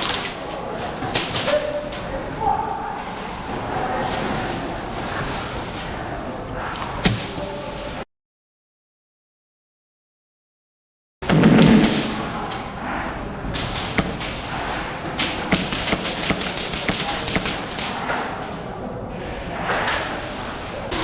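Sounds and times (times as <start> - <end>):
sharp clicks and knocks: 13.6 - 18.0
thud: 13.8 - 18.0.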